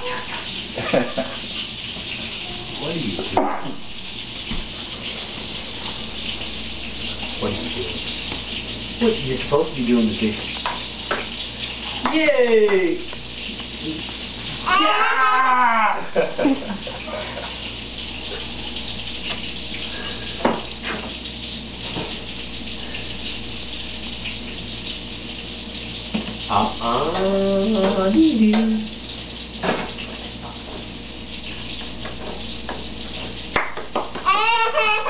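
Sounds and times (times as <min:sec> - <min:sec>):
child vocalising: 0:00.0 - 0:00.4, 0:14.6 - 0:16.1, 0:34.2 - 0:35.0
tap water running into sink: 0:00.0 - 0:35.0.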